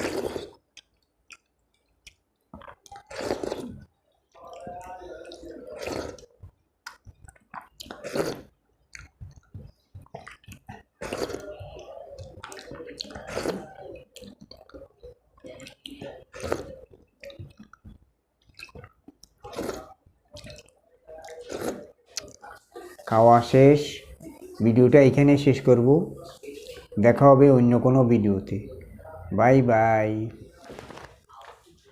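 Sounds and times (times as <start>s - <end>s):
wet chewing and smacking: 0.0s - 23.2s.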